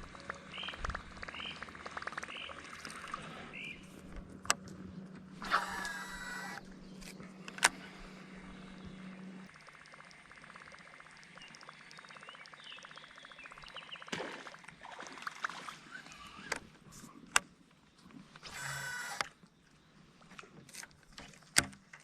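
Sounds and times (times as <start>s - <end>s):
fishing reel ticking: 5.4s - 7.8s, 8.4s - 14.1s.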